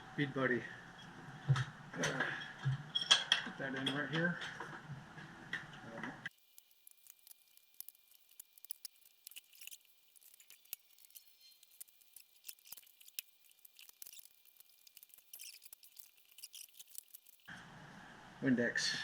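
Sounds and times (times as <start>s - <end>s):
tire irons clicking and scraping: 6.4s - 17.5s.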